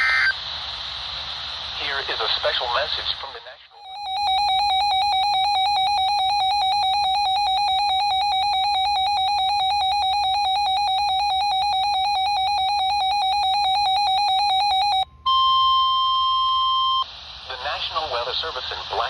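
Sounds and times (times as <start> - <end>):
high electronic alarm beeps: 3.8 - 17.0.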